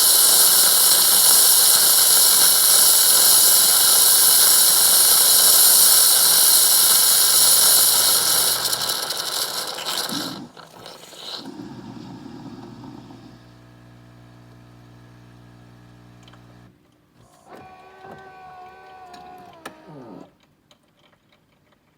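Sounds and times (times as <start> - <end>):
steam hissing milk frothing: 0.0 - 14.1, 17.5 - 20.2.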